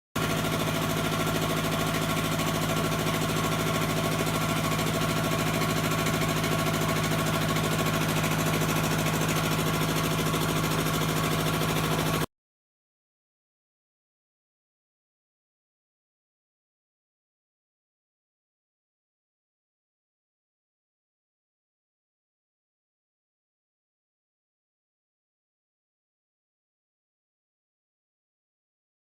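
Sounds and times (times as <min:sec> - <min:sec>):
air compressor running: 0:00.2 - 0:12.3.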